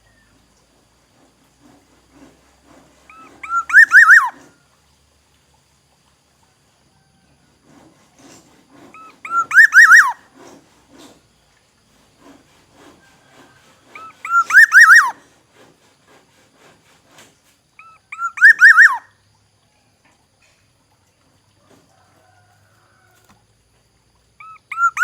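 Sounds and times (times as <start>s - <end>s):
bird whistling fluty notes: 3.1s - 4.5s, 9.0s - 10.2s, 13.9s - 15.2s, 17.8s - 19.1s, 24.4s - 25.0s.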